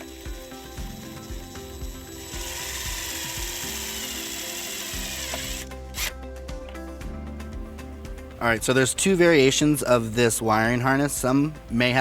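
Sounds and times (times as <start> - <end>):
power driver driving screw: 0.0 - 6.2.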